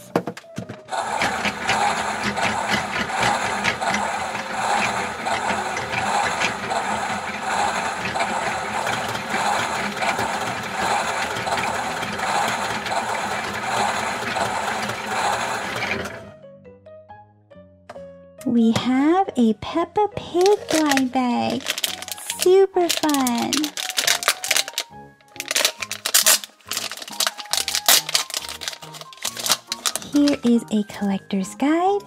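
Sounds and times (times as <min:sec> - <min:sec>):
toy washing machine whirring rattle: 0:00.9 - 0:16.3, 0:20.4 - 0:31.0.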